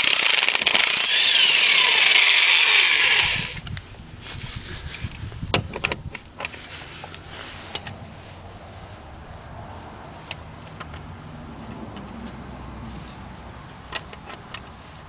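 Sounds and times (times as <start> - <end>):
tool handling clicks and knocks: 5.5 - 8.0, 10.2 - 15.0.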